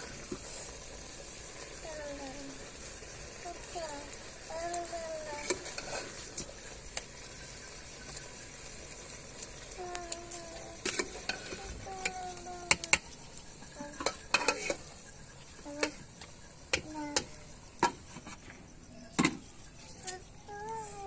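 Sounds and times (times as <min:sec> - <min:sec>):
food sizzling: 0:00.0 - 0:21.0
spoon scraping a pot: 0:05.4 - 0:06.4, 0:10.8 - 0:11.7, 0:13.8 - 0:15.1.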